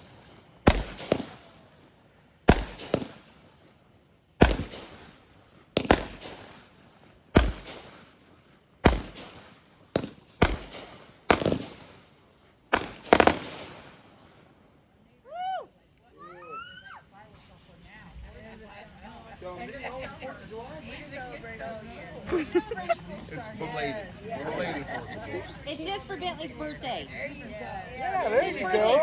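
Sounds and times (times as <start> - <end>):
fireworks bangs: 0.0 - 14.7.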